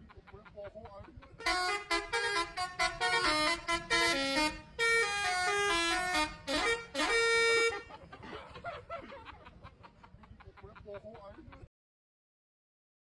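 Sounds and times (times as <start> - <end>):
musical bus air horn melody: 1.4 - 7.9.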